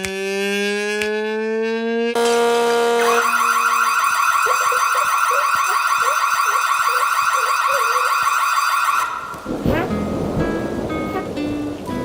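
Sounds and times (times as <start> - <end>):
warbling electronic siren tone: 2.2 - 9.6.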